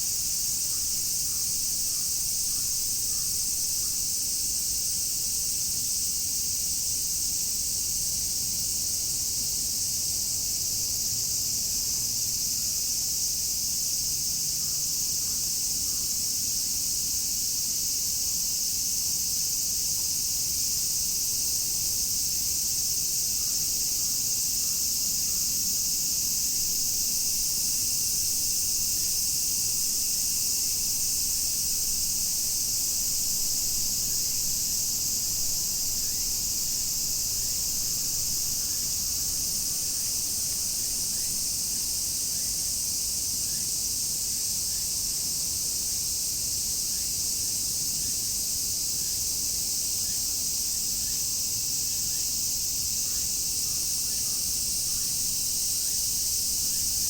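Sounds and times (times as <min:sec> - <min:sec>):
cicadas buzzing: 0:00.0 - 0:57.0.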